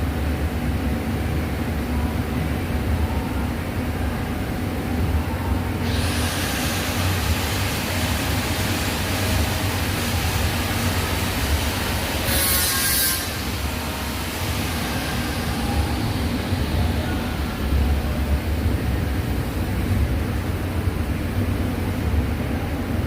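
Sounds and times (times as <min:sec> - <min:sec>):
steady low hum: 0:00.0 - 0:23.0
welding arc hissing: 0:05.8 - 0:17.6.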